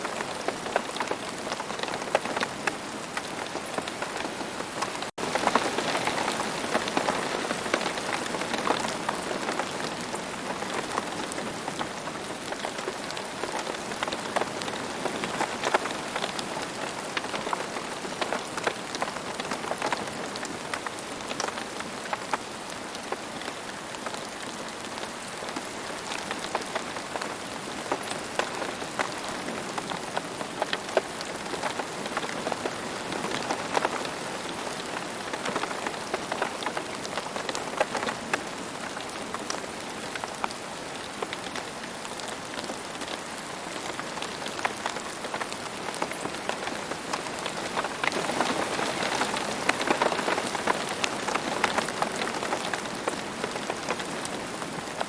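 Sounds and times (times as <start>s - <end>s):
steady rain falling: 0.0s - 55.0s
raindrops ticking: 42.6s - 55.0s.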